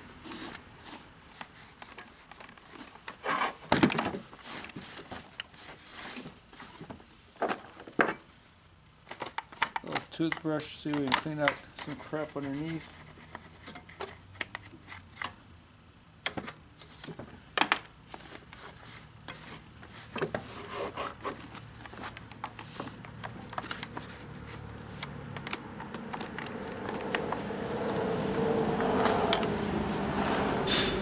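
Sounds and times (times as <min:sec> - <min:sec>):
plastic and metal clicks: 0:09.1 - 0:11.9.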